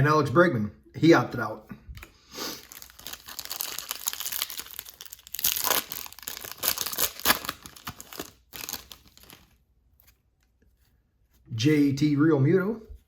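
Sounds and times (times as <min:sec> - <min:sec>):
foil wrapper tearing and crinkling: 0:02.6 - 0:09.6.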